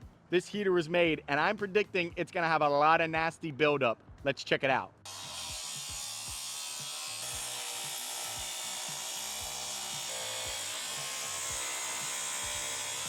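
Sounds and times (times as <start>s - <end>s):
power tool cutting steel: 5.1s - 13.0s.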